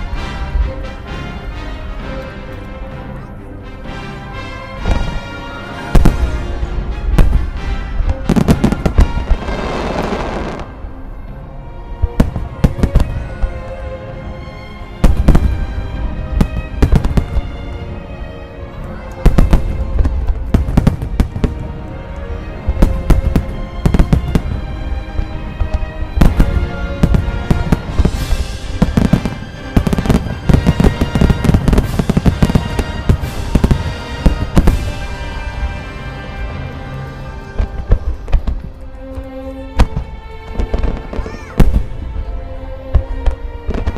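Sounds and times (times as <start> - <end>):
music: 0.0 - 43.9
fireworks bursting with booms: 4.8 - 10.8, 12.0 - 13.6, 15.0 - 17.6, 19.2 - 21.7, 22.7 - 35.7, 42.9 - 43.9.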